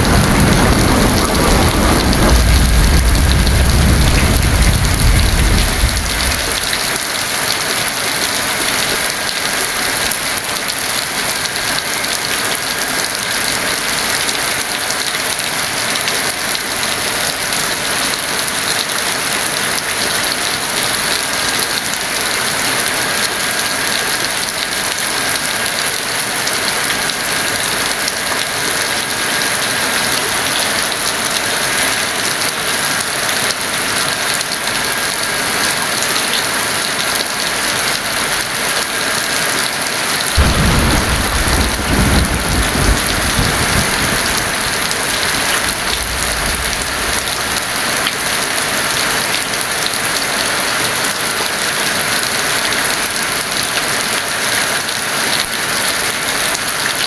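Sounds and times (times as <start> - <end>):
thunder clap and rumble: 0.0 - 7.1, 40.4 - 49.4
heavy rain: 0.0 - 57.0.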